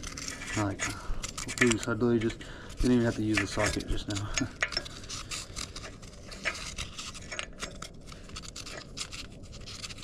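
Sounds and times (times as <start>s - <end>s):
metal parts clicking and scraping: 0.0s - 10.0s.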